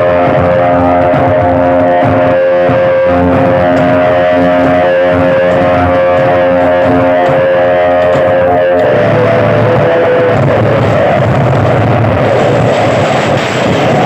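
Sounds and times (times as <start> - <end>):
loud guitar music through speakers: 0.0 - 14.0.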